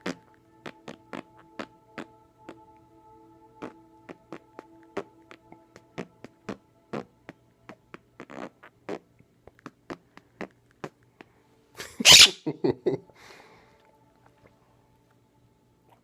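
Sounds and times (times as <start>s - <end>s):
raspberry blowing noise: 0.0s - 2.2s, 3.6s - 11.0s
faint steady tones: 0.0s - 9.5s, 13.0s - 16.0s.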